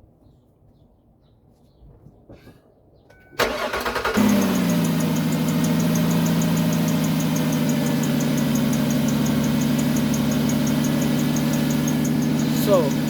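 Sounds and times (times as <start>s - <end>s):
car engine idling: 3.2s - 13.0s
drive belt squealing chirps: 3.4s - 13.0s.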